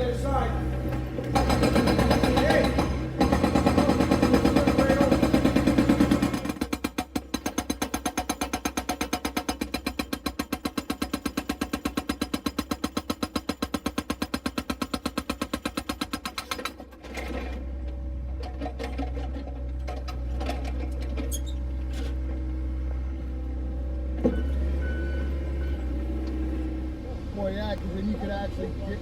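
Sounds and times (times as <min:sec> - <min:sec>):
hydraulic breaker hammering concrete: 0:00.4 - 0:17.5
low engine rumble: 0:21.6 - 0:29.0.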